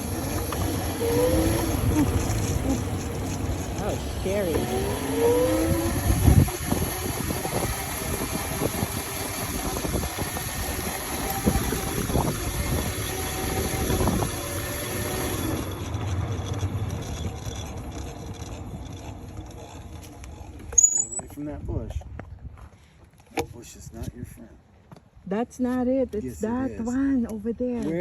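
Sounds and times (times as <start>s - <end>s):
drivetrain and frame rattling: 0.0s - 14.4s
electric motorbike motor whine: 0.0s - 21.2s.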